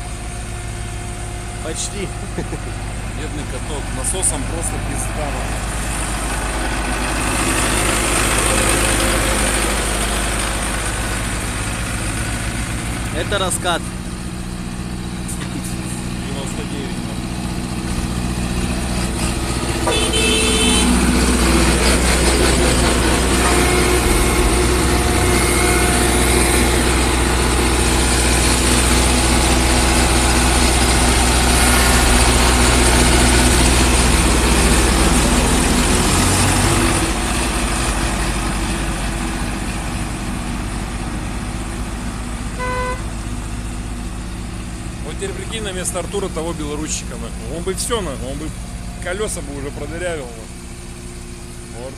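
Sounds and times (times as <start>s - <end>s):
road roller diesel engine: 0.0s - 51.9s
short beeps: 42.6s - 43.0s.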